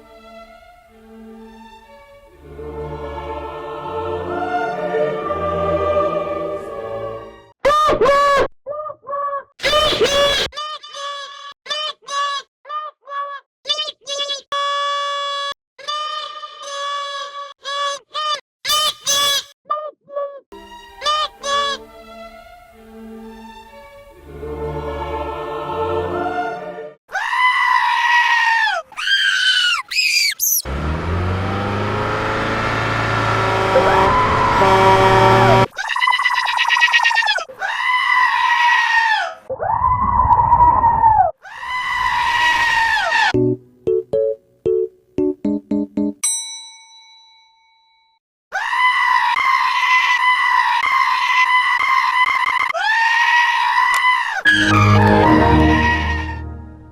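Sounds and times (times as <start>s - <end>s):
goat screaming: 7.7s - 20.0s, 27.1s - 30.5s, 35.6s - 40.0s, 40.8s - 43.4s, 48.5s - 56.5s.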